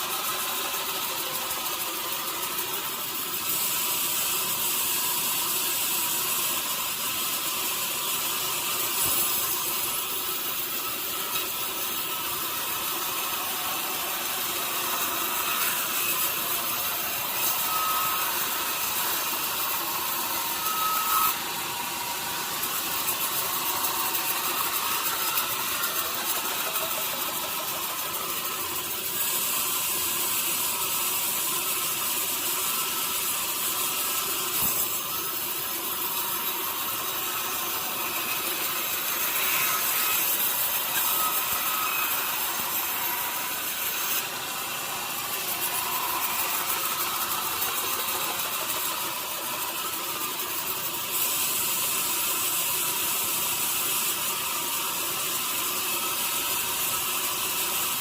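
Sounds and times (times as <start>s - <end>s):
saw cutting through log: 0.0s - 58.0s.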